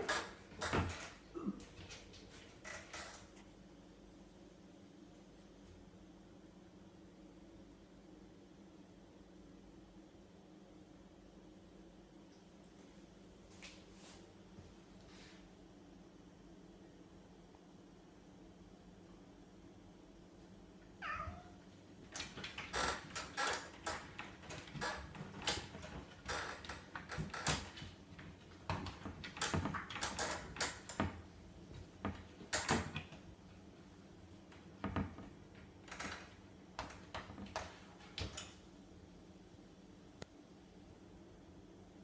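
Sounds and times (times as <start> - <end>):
cat meowing: 21.0 - 21.6.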